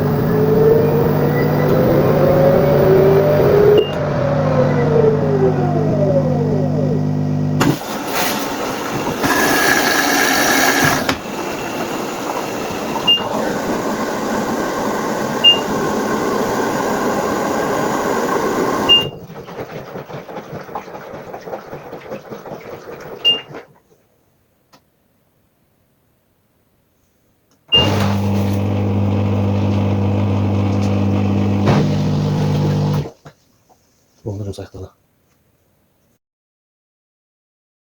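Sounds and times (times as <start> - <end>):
washing machine running: 0.0 - 23.8, 27.7 - 33.1
short high beeps: 15.4 - 15.7.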